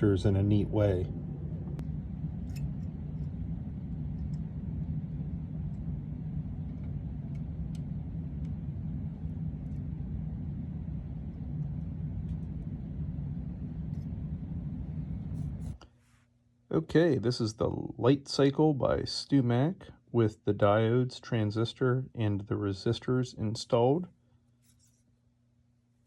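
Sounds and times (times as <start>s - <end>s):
steady low rumble: 0.0s - 15.8s.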